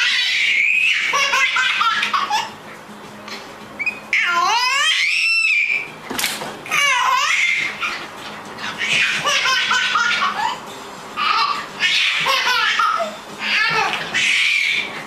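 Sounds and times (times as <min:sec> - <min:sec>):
cat yowling: 0:00.0 - 0:01.7, 0:04.1 - 0:05.9, 0:11.4 - 0:14.9.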